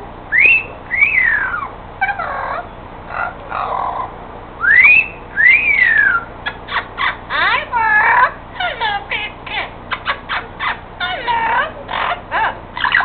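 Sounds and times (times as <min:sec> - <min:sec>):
bird whistling: 0:00.3 - 0:02.7, 0:04.6 - 0:07.2
bird chattering: 0:00.3 - 0:13.0.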